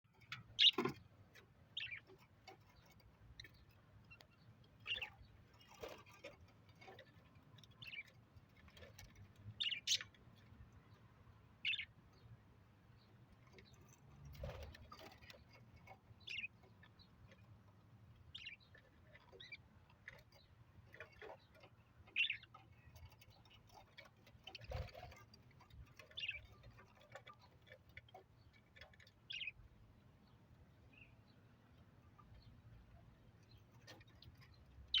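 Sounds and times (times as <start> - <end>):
budgerigars chirping: 0.5 - 0.9, 11.6 - 11.9, 22.1 - 23.0.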